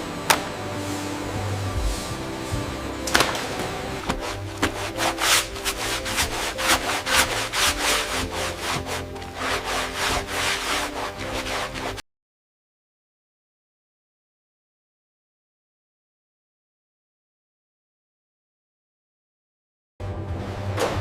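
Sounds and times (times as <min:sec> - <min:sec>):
background music tones: 0:00.0 - 0:12.0, 0:20.0 - 0:21.0
rough rubbing strokes: 0:00.0 - 0:12.0.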